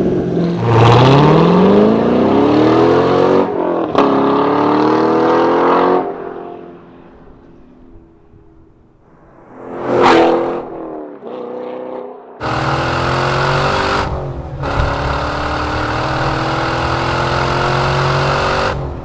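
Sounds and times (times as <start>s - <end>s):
car engine revving hard: 0.1s - 6.2s, 12.4s - 19.0s.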